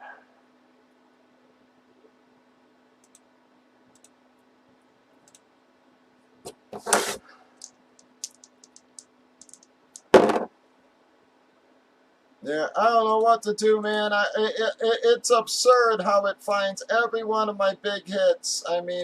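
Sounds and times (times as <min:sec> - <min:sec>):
keyboard and mouse clicks: 0:03.0 - 0:03.3, 0:06.5 - 0:10.1.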